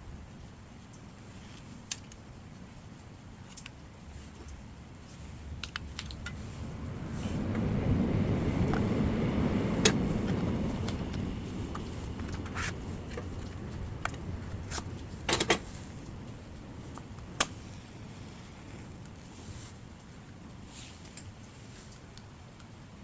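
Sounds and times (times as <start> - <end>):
wood crackling and popping: 0.8 - 22.7
flames rushing: 4.0 - 22.2.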